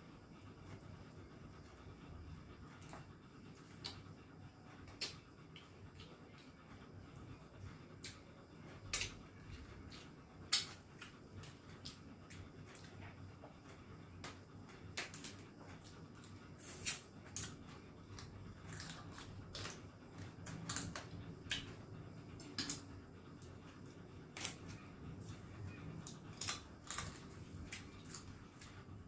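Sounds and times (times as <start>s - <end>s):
food being bitten and chewed: 15.0s - 21.8s, 26.0s - 28.8s.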